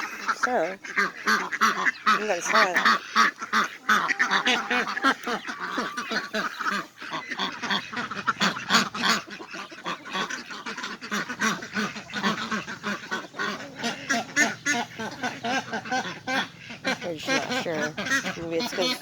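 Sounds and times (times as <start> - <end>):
ducks quacking: 0.0 - 19.0.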